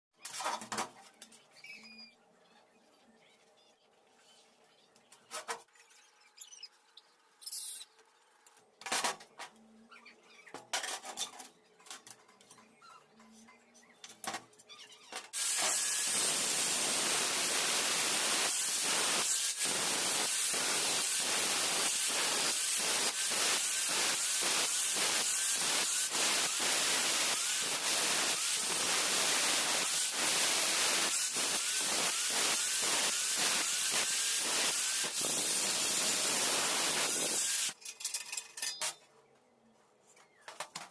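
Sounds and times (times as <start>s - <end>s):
electric welding crackling hiss: 15.4s - 37.8s.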